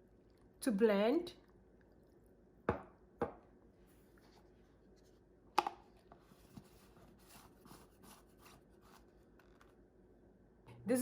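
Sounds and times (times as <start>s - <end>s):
kitchen items knocking on counter: 2.7s - 3.4s.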